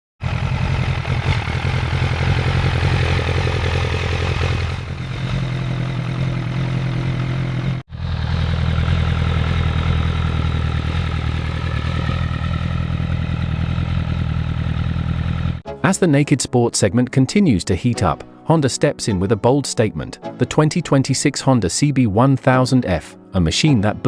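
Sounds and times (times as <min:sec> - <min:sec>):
motorcycle engine idling: 0:00.2 - 0:15.6.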